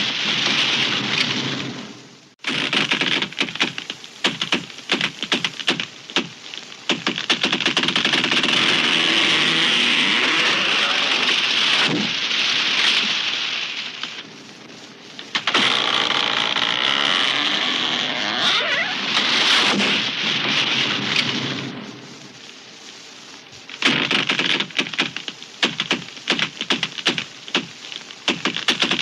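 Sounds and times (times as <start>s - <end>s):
tree crashing down: 0.0s - 22.4s
branches snapping: 2.6s - 12.2s, 15.2s - 19.6s.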